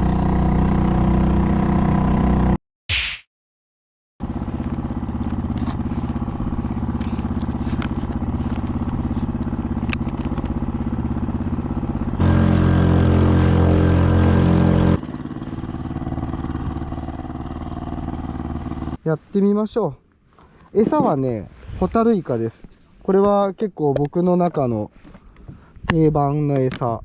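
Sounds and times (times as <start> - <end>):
outboard motor running: 0.0 - 2.5, 4.2 - 19.0.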